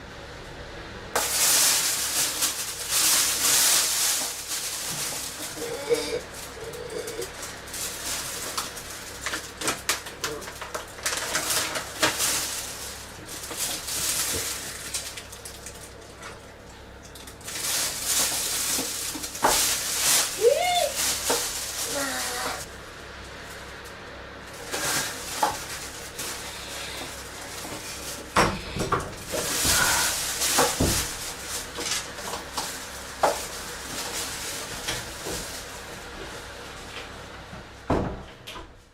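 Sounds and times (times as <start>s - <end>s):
woman groaning: 5.5s - 7.3s, 20.4s - 21.0s, 21.9s - 22.6s.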